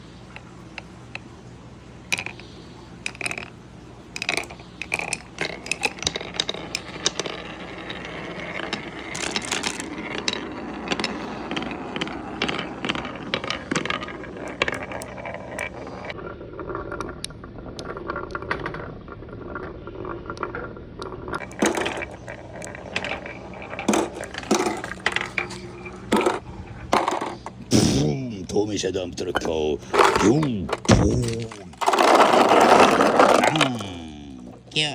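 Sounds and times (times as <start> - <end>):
marbles clicking and clacking: 0.0 - 16.2, 21.3 - 27.7, 29.3 - 34.9
marbles rolling on wooden track: 0.0 - 27.7, 28.5 - 34.9.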